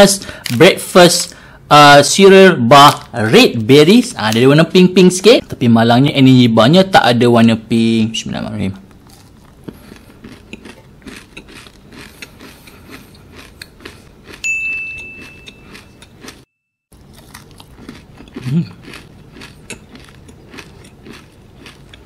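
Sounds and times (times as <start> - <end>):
crunchy biting and chewing: 8.9 - 14.4, 15.2 - 22.0.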